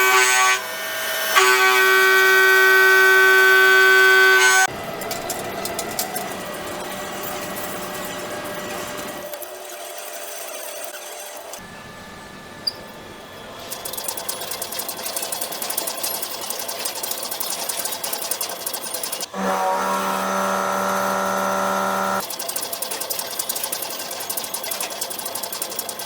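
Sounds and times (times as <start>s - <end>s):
steady motor hum: 0.0s - 9.5s, 11.0s - 26.0s
machine tool clatter: 4.6s - 11.6s, 13.6s - 19.4s, 22.1s - 26.0s.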